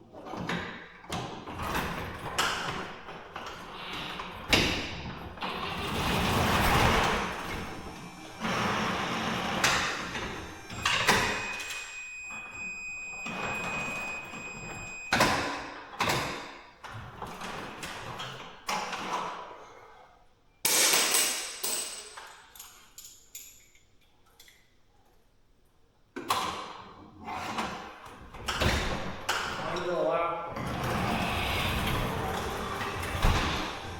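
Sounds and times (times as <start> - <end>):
steady high whine: 6.5 - 15.2.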